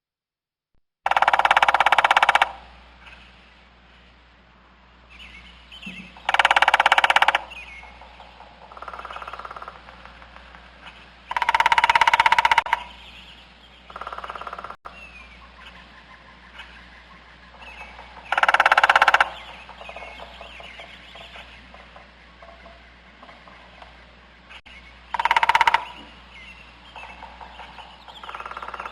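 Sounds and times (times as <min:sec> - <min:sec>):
harsh rattling bird calls: 0:01.0 - 0:28.9
faint bird chirps: 0:05.0 - 0:09.8, 0:10.8 - 0:28.9.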